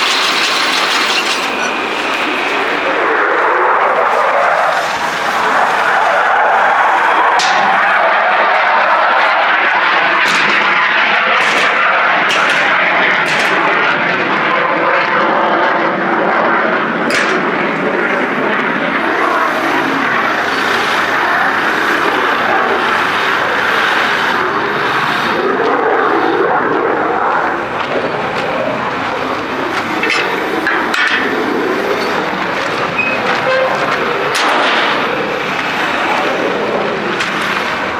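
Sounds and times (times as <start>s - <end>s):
farm machinery running: 0.0s - 14.4s, 17.0s - 37.9s.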